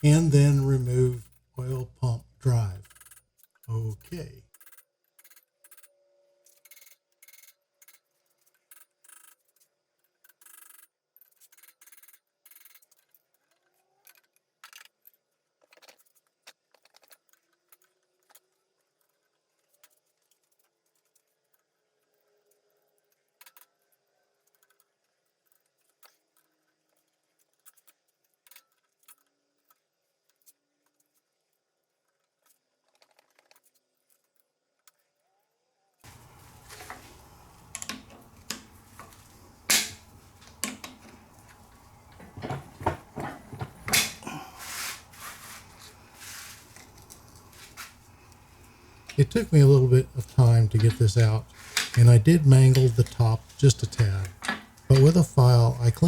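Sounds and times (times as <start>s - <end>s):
hand tools clicking and scraping metal: 36.1s - 56.0s.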